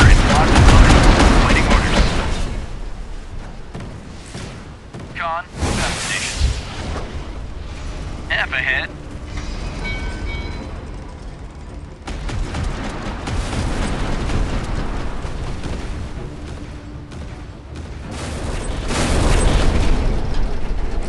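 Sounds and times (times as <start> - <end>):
rumbling battle blasts: 0.0 - 21.0
rushing noise: 5.2 - 11.8.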